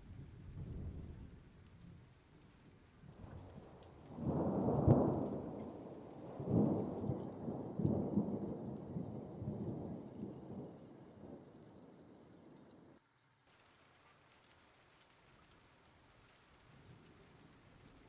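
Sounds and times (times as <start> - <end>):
faint rain: 0.0 - 18.0
thunder rumbling: 3.0 - 13.0.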